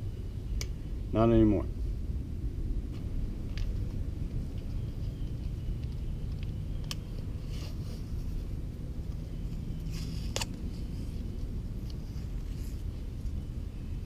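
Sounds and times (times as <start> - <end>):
steady low rumble: 0.0 - 14.0
handling clicks: 5.4 - 7.3
raspy scrapes: 7.4 - 8.5.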